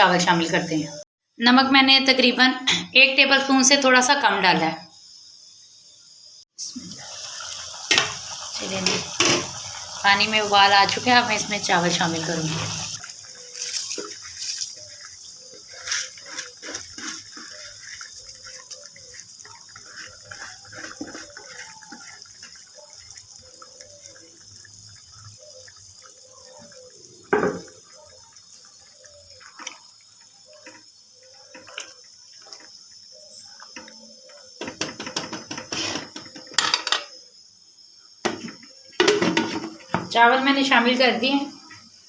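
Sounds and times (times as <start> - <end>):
water bubbling in a pot: 6.6 - 42.0
water splashes: 7.1 - 33.9.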